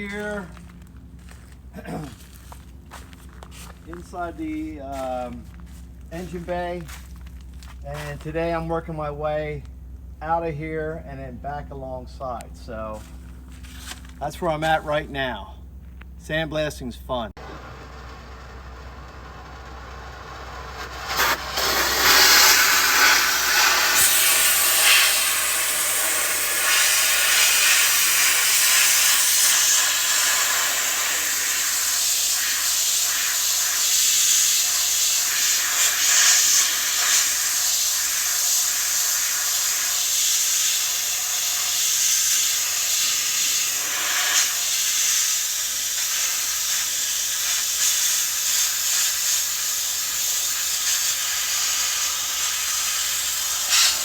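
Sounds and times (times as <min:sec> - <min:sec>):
sandblaster hissing: 0:00.0 - 0:00.6, 0:17.4 - 0:54.0.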